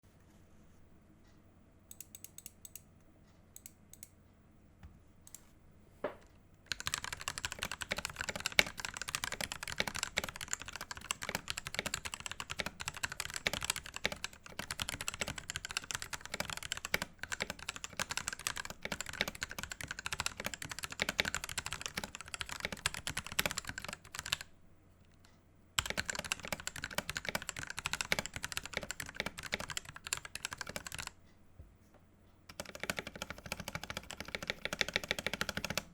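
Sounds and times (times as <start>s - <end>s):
typing on mechanical keyboard: 6.7s - 24.5s, 25.8s - 31.2s, 32.5s - 35.9s.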